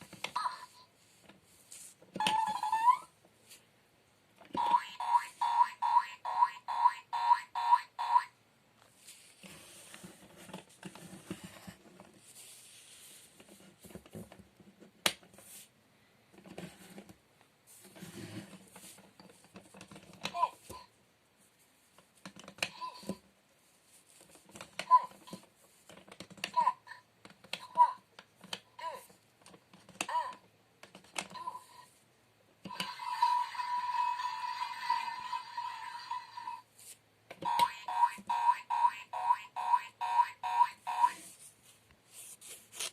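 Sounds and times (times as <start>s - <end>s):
plastic toy rustling and tapping: 9.1s - 12.4s, 13.2s - 15.6s, 16.3s - 20.9s, 21.9s - 23.3s, 24.0s - 31.4s.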